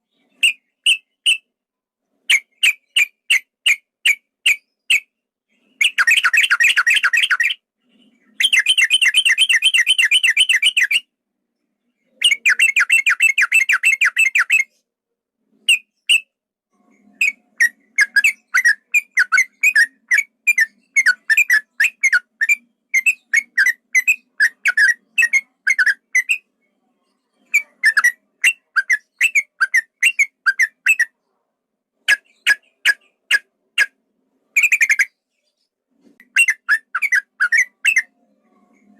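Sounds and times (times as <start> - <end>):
bird trilling song: 0.0 - 1.5, 2.3 - 14.8, 15.6 - 31.3, 32.1 - 38.9.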